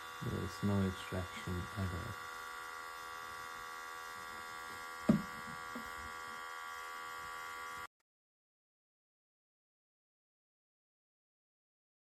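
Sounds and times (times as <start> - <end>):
small electric pump buzzing: 0.0 - 8.0
sharp knock: 5.1 - 5.4.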